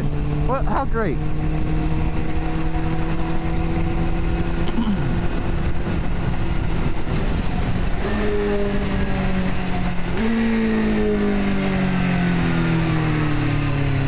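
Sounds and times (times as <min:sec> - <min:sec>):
motorcycle engine running: 0:00.0 - 0:14.0
wind rumble: 0:00.0 - 0:14.0.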